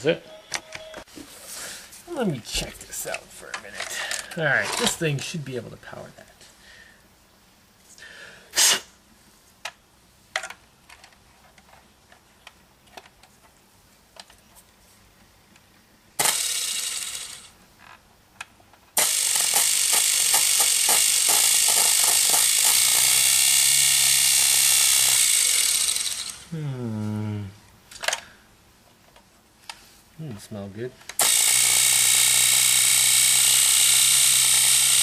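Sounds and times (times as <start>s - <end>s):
electric motor with rattling buzz: 16.2s - 17.6s, 19.0s - 26.5s, 31.2s - 35.0s.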